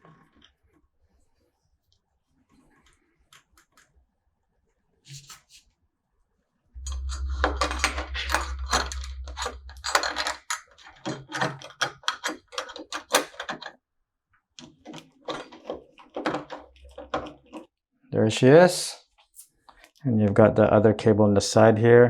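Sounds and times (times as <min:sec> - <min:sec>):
low rumble: 0:06.8 - 0:10.5, 0:16.7 - 0:17.1.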